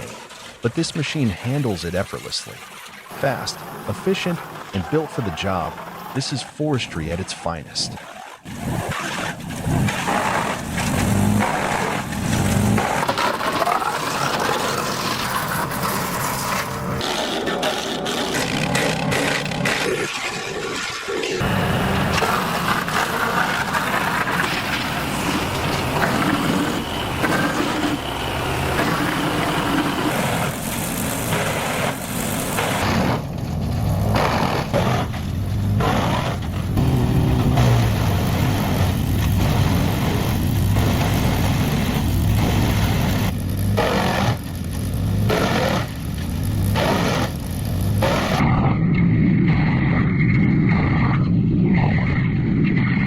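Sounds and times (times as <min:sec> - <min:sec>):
wood going through chipper: 0:00.0 - 0:48.5
wood chipper running: 0:02.6 - 0:06.3, 0:08.0 - 0:48.4.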